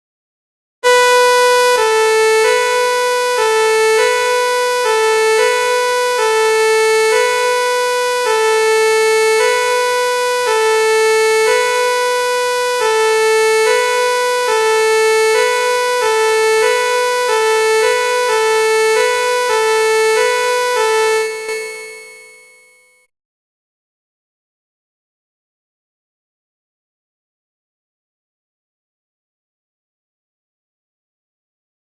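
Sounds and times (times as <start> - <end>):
two-tone fire engine siren: 0.8 - 23.1.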